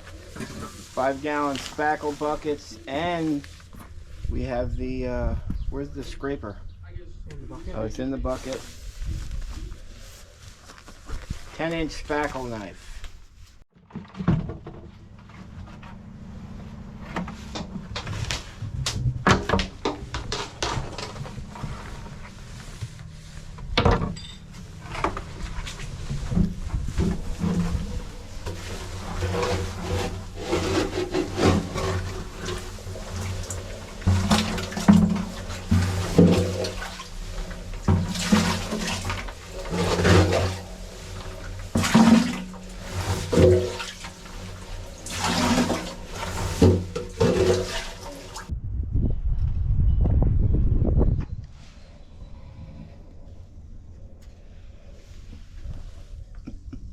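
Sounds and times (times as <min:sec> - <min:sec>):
wet scraping and slopping sludge: 0:00.0 - 0:04.1, 0:15.2 - 0:48.5.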